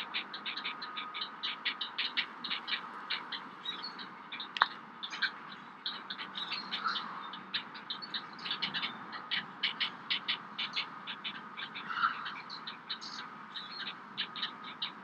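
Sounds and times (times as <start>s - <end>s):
birds chirping and clicking: 0.0s - 15.0s.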